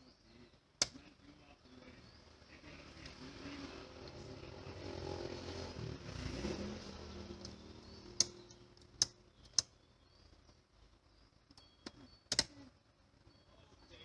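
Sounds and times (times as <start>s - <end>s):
mechanical hum: 0.0s - 14.0s
sharp clicks: 7.4s - 9.8s, 11.5s - 12.6s.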